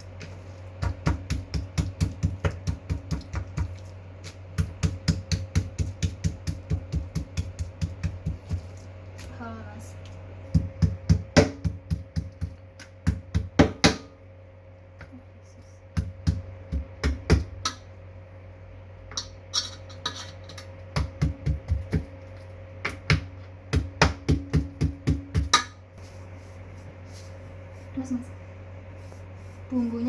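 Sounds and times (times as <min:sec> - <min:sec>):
tool pounding food: 0:00.1 - 0:08.7, 0:10.5 - 0:14.1, 0:16.0 - 0:17.8, 0:20.0 - 0:22.2, 0:22.8 - 0:25.8.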